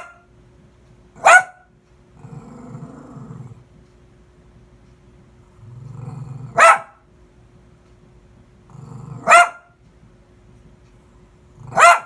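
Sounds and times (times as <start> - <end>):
dog barking: 0.0 - 0.2, 1.2 - 1.7, 6.5 - 7.0, 9.2 - 9.8, 11.6 - 12.0
dog growling: 2.2 - 3.7, 5.5 - 6.6, 8.7 - 9.4.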